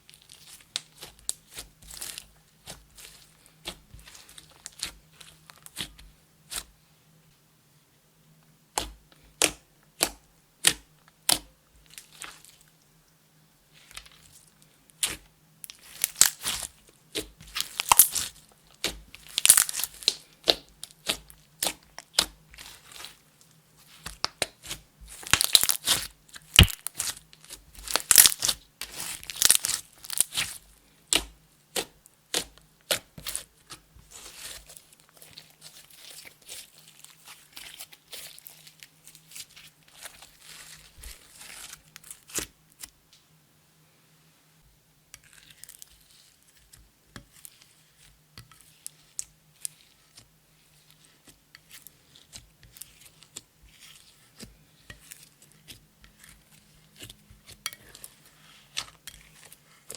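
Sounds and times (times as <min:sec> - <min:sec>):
slime squished by hand: 0:15.0 - 0:23.2, 0:23.8 - 0:42.5.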